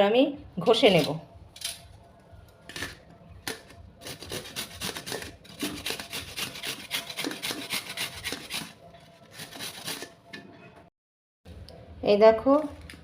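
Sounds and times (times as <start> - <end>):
beetroot grating on hand grater: 4.0 - 10.1.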